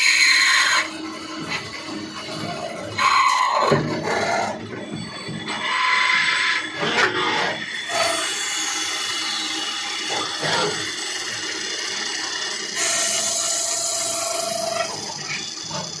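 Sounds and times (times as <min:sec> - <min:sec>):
lathe machine noise: 0:00.0 - 0:16.0.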